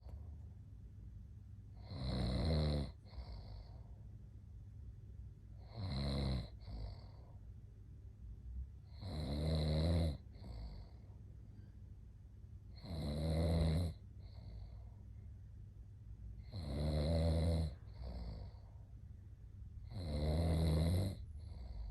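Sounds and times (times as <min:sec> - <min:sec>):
man snoring: 0:01.8 - 0:03.7, 0:05.6 - 0:07.2, 0:08.9 - 0:11.0, 0:12.7 - 0:14.6, 0:16.4 - 0:18.6, 0:19.9 - 0:21.9.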